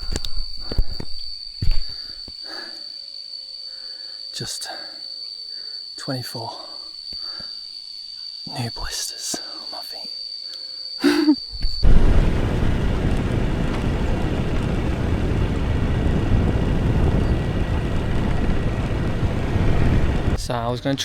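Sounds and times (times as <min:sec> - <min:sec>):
high-pitched whine: 0:11.5 - 0:20.7
wind buffeting microphone: 0:11.6 - 0:20.5
motorbike running: 0:11.9 - 0:20.4.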